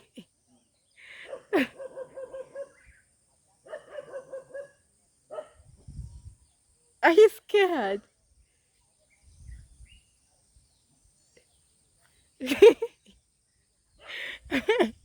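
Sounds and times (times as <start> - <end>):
dog barking: 1.2 - 2.9, 3.6 - 5.6.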